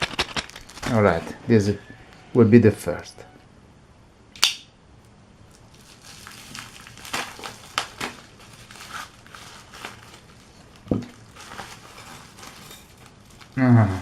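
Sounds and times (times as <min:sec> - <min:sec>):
packaging crinkling: 0:00.0 - 0:01.3, 0:05.5 - 0:13.6.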